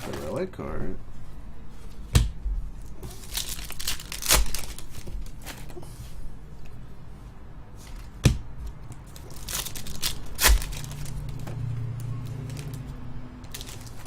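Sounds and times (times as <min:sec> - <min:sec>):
foil wrappers tearing and crinkling: 0:02.9 - 0:05.7, 0:09.1 - 0:11.5, 0:12.2 - 0:14.0.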